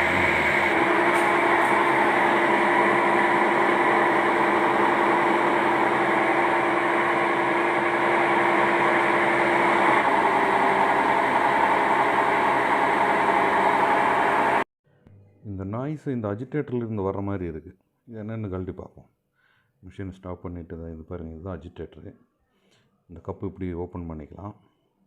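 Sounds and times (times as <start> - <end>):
washing machine hum: 0.0 - 14.6
washing machine mechanical noise: 0.0 - 14.6.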